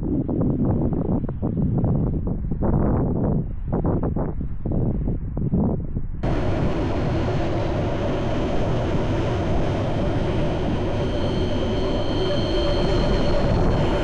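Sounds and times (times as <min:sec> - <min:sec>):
high whining tones: 0:06.2 - 0:14.0
moving vehicle rumble: 0:06.2 - 0:14.0.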